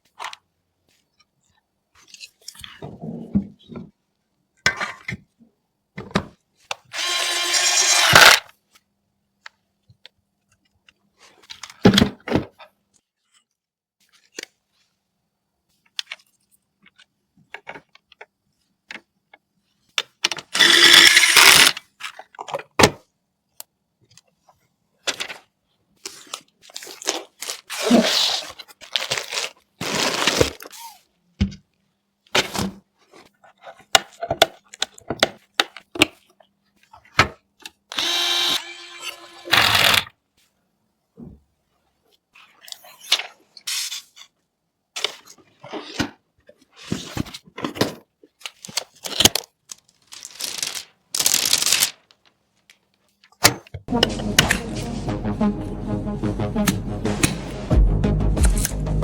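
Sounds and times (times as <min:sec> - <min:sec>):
scraping or rustling: 0:49.7 - 0:52.1.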